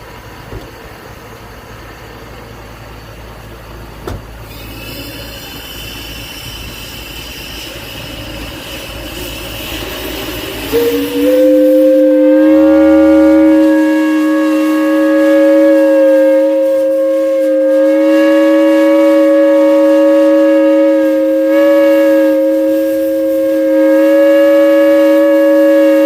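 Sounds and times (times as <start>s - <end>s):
high whistling steam hiss: 0.0s - 26.0s
steam engine rumbling: 0.0s - 26.0s
deep two-tone steam whistle: 4.4s - 26.0s.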